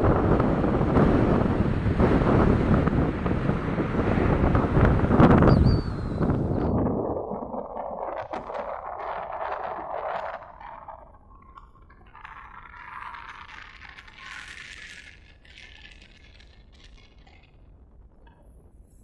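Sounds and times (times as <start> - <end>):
stormy sea waves washing: 0.0 - 13.5.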